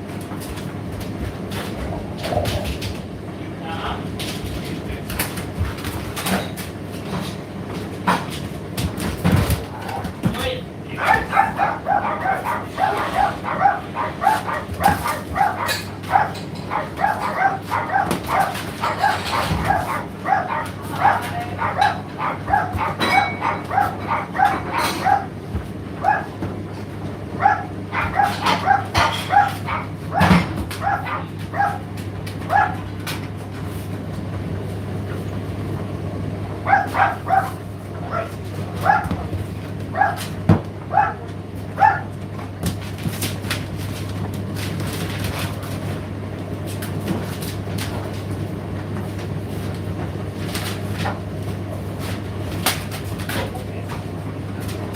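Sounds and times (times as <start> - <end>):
tumble dryer humming: 0.0 - 54.9
dog barking: 10.9 - 25.4, 26.0 - 26.4, 27.4 - 31.9, 32.5 - 32.9, 36.6 - 39.2, 39.9 - 42.2.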